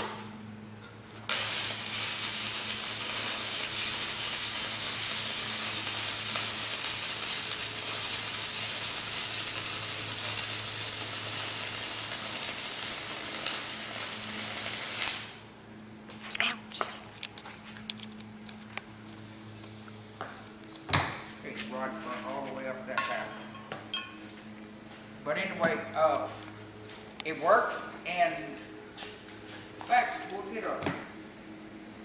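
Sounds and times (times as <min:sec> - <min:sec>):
stick welding arc hiss: 0:01.3 - 0:15.5, 0:19.0 - 0:20.6.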